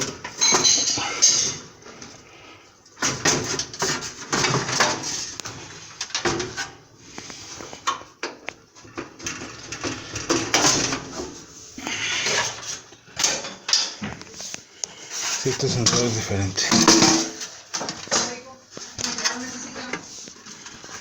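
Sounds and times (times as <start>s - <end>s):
clicks and rattles of dryer parts: 3.0s - 6.8s, 7.8s - 11.4s, 12.4s - 14.6s, 15.2s - 21.0s.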